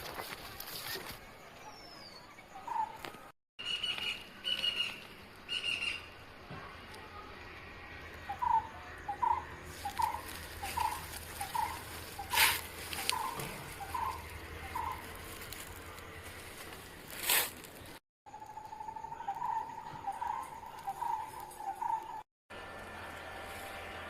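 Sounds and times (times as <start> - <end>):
high bird calls: 3.6 - 6.2, 8.2 - 15.4, 18.3 - 22.2.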